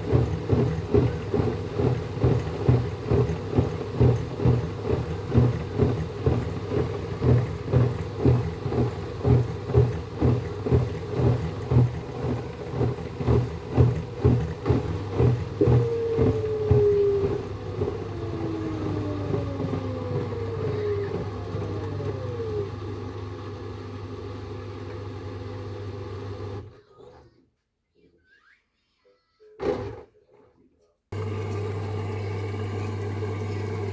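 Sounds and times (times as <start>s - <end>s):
washing machine thumping: 0.0s - 21.1s.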